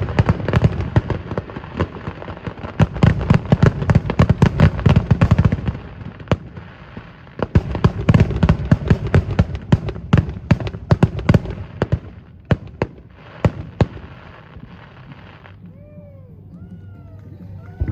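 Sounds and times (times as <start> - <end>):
fireworks crackling hiss: 0.0 - 16.2
fireworks bangs and booms: 0.0 - 17.9.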